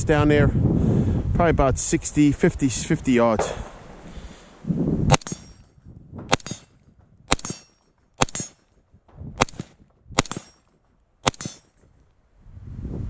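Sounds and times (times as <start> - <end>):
rifle shots: 5.1 - 5.6, 6.2 - 11.9.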